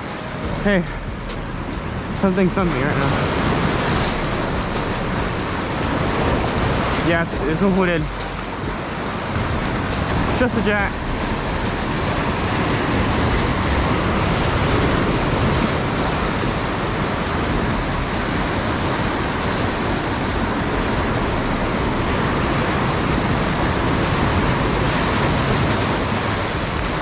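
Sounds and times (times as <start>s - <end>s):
ocean surf breaking: 0.0s - 27.0s.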